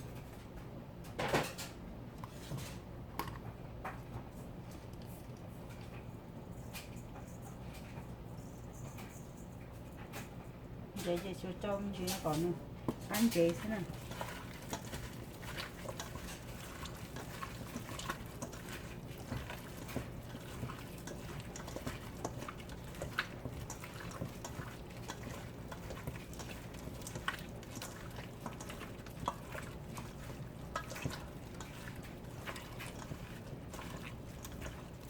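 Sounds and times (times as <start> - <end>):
low steady hum: 0.0 - 35.0
sauce bubbling in pan: 13.6 - 35.0.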